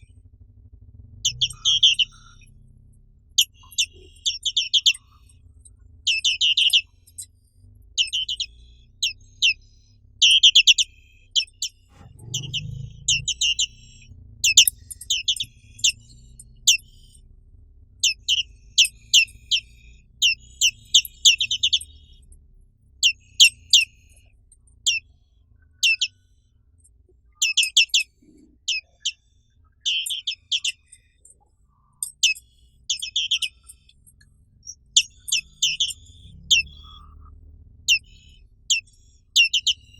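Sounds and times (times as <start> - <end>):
bird singing high sweeping chirps: 1.2 - 2.6, 3.4 - 5.4, 6.0 - 17.2, 18.0 - 22.3, 29.8 - 31.3, 32.0 - 39.9.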